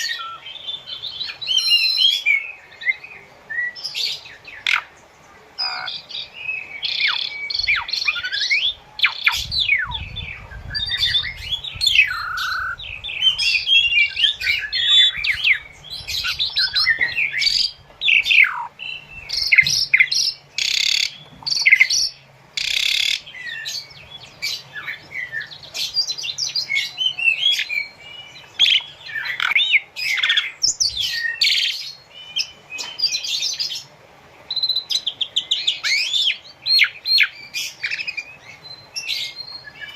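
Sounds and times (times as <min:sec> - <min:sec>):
starling singing: 0:00.0 - 0:33.9, 0:34.5 - 0:39.9.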